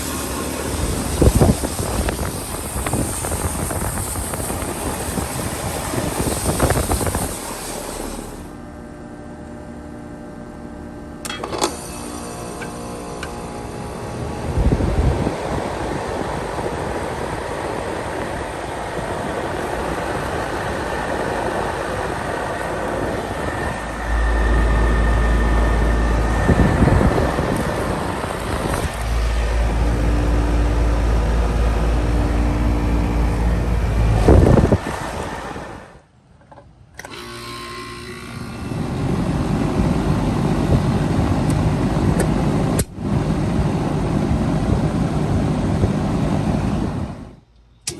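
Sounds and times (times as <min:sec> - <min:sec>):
air conditioner fan rushing: 0:00.0 - 0:47.9
deep hum: 0:18.0 - 0:35.9.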